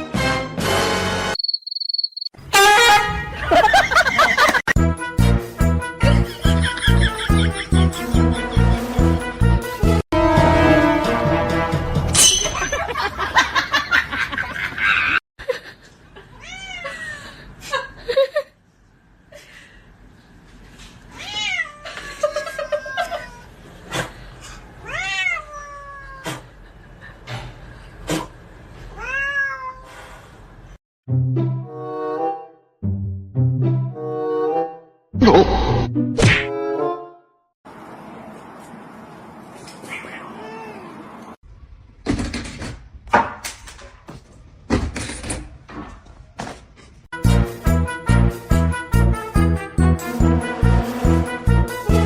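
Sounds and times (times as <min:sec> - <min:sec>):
music: 0:00.0 - 0:01.4, 0:04.8 - 0:12.2, 0:31.1 - 0:35.1, 0:35.8 - 0:37.5, 0:47.2 - 0:52.0
cat meowing: 0:21.2 - 0:23.5, 0:24.8 - 0:26.3, 0:29.0 - 0:29.8.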